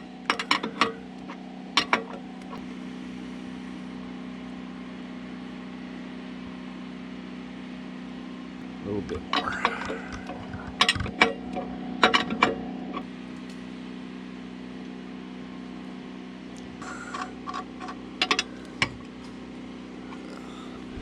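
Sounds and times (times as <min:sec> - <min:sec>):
metal clicks and knocks: 0:00.2 - 0:02.6, 0:09.2 - 0:13.0
low hum: 0:09.1 - 0:13.6, 0:16.5 - 0:21.0.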